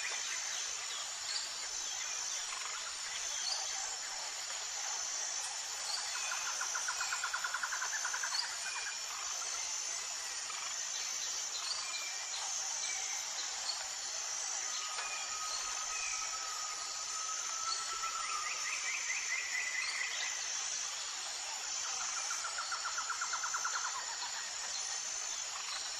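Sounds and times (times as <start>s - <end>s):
insect chorus: 0.0s - 25.9s.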